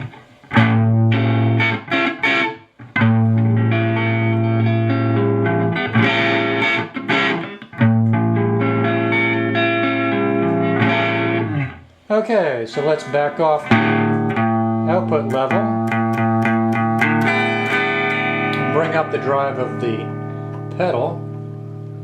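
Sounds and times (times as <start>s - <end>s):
overdriven electric guitar chords: 0.0s - 12.0s, 12.7s - 22.0s.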